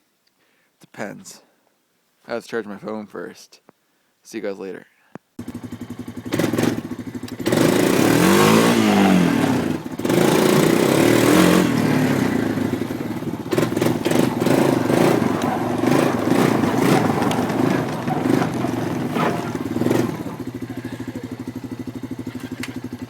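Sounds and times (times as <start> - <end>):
atv engine revving: 5.4 - 23.0.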